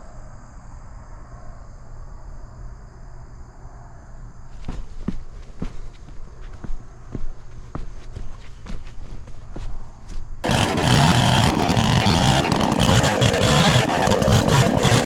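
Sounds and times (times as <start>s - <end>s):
soft footsteps: 4.5s - 11.4s
skid steer engine running: 10.4s - 15.0s.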